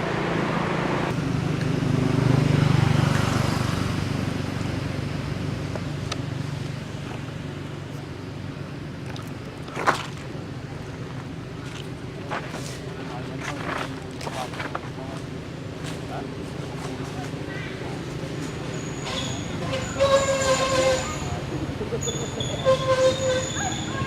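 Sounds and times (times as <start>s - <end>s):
vehicle engine rumbling past: 0.0s - 8.6s.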